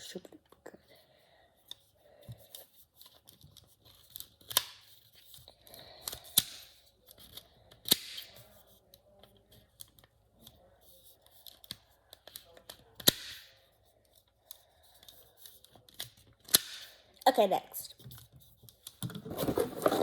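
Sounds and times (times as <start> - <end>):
sharp plastic snaps: 4.4 - 4.8, 6.0 - 8.4, 11.6 - 13.5, 15.9 - 17.0.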